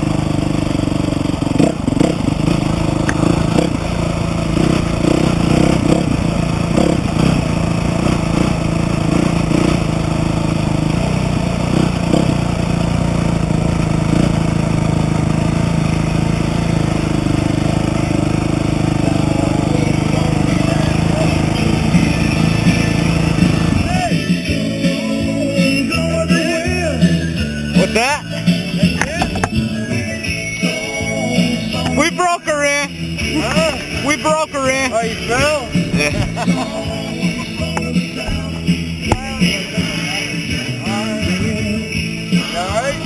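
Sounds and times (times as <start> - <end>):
dirt bike engine running: 0.0 - 43.0.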